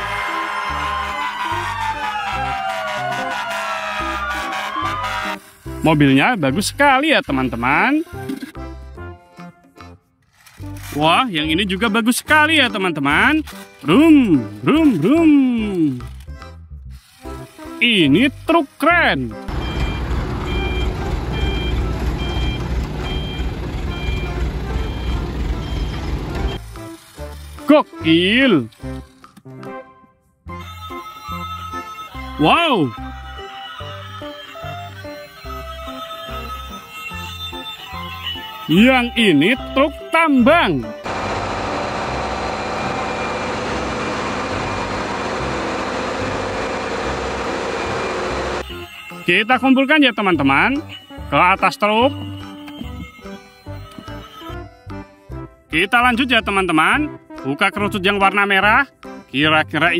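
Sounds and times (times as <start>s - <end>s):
truck reversing alarm beeping: 19.4s - 26.7s, 30.5s - 40.2s, 40.8s - 55.0s
low engine rumble: 19.5s - 26.6s, 41.1s - 48.6s.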